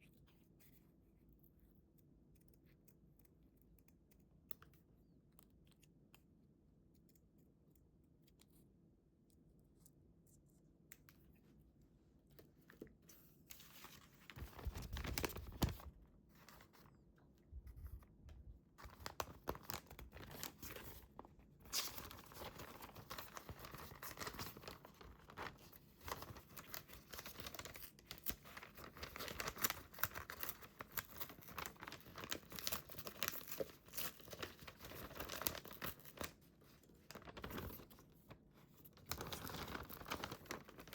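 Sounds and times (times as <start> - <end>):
paper crinkling and tearing: 13.5 - 16.8, 18.8 - 38.3, 39.0 - 40.9.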